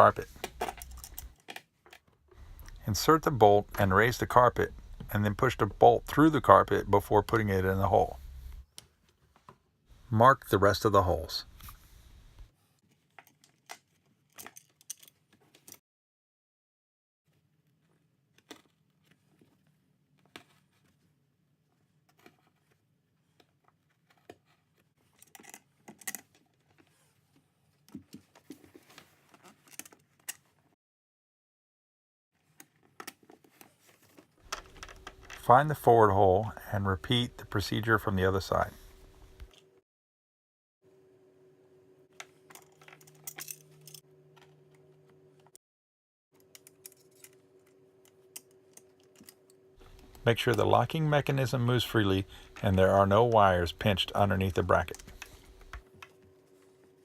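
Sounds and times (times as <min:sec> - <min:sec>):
steady low hum: 0:02.4 - 0:08.7, 0:46.9 - 0:57.0.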